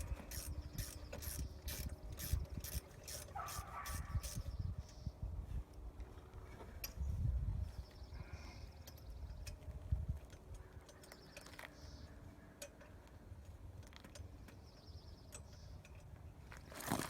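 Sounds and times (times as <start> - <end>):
hand tools clicking on metal: 0.0 - 4.4.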